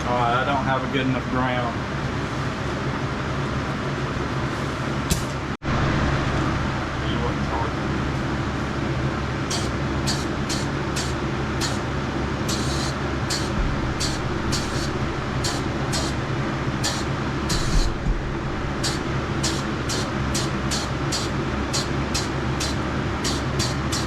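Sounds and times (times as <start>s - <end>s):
exhaust fan humming: 0.0s - 24.0s
spray gun hissing puffs: 9.4s - 18.0s, 18.7s - 24.0s.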